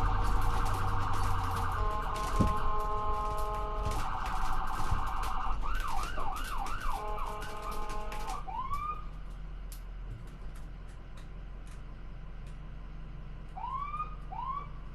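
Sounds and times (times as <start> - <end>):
electronic siren wailing: 0.0 - 9.1, 13.6 - 14.8.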